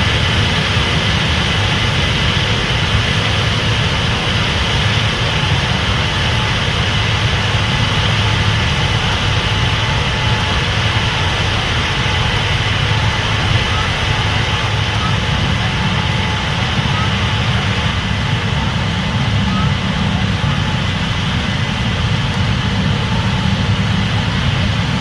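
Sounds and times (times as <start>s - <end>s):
combine harvester engine drone: 0.0s - 25.0s
high machinery hum: 0.0s - 25.0s.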